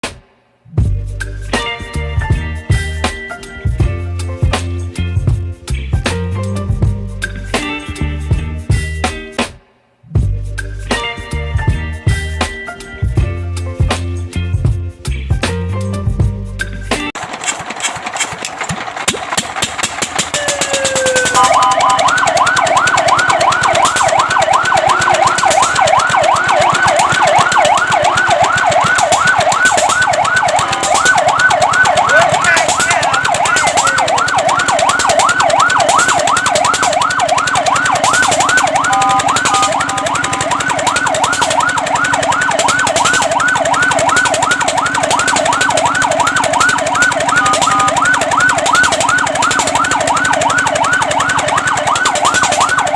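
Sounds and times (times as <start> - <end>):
fire truck siren yelping: 17.2 - 52.9.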